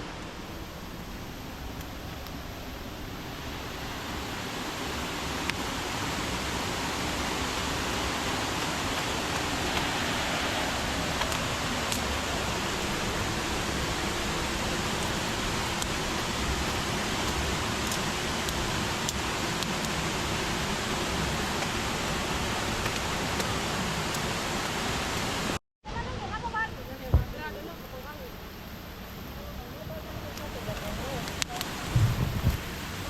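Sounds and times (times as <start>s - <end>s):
waterfall rushing: 0.0s - 25.6s.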